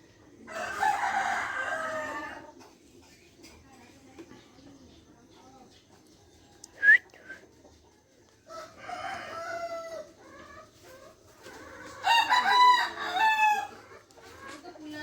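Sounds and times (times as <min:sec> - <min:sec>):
rooster crowing: 0:00.5 - 0:02.4, 0:08.5 - 0:10.0, 0:12.0 - 0:13.8.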